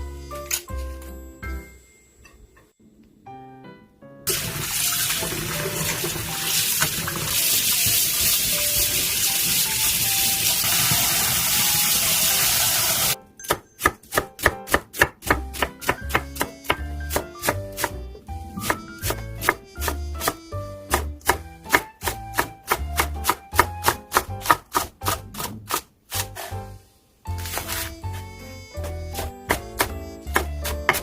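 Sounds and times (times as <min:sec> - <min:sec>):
tap water running into sink: 0:04.3 - 0:13.2
knife chopping on cutting board: 0:13.5 - 0:18.0, 0:18.6 - 0:26.6, 0:27.4 - 0:31.0.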